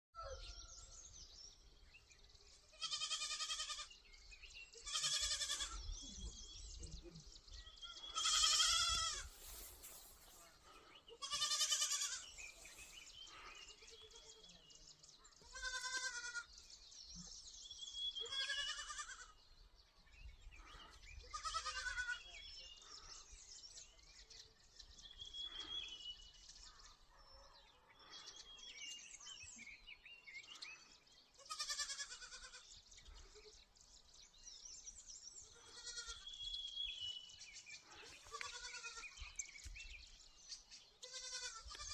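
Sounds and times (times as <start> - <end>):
goats bleating: 4.9 - 5.8, 8.1 - 9.3, 11.2 - 12.5, 15.4 - 16.5, 18.2 - 19.3, 21.3 - 22.2, 35.6 - 36.2, 38.2 - 39.1, 41.0 - 41.9.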